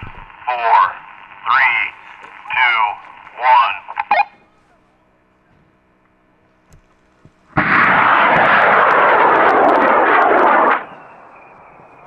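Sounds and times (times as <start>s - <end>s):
rocket motor roaring and crackling: 0.0s - 4.1s, 7.5s - 12.0s
faint rumble: 0.0s - 12.0s.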